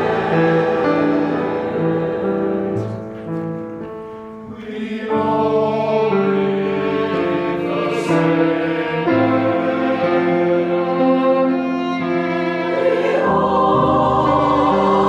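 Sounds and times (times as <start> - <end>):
choir singing with bowed strings: 0.0 - 15.0.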